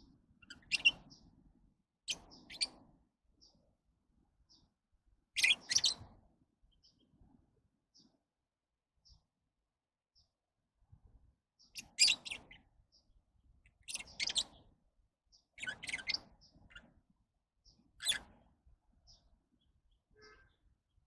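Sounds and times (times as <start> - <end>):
birds chirping: 0.3 - 1.4, 2.1 - 3.7, 5.4 - 7.2, 11.6 - 21.0.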